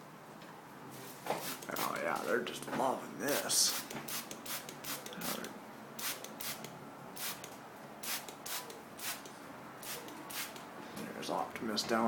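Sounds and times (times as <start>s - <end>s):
spray bottle squirts: 1.4s - 2.0s, 3.3s - 10.6s.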